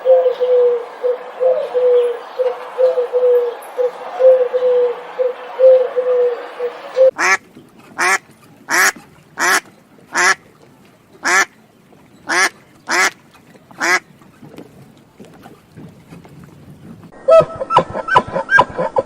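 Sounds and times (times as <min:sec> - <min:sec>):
animal calls: 0:00.0 - 0:07.2.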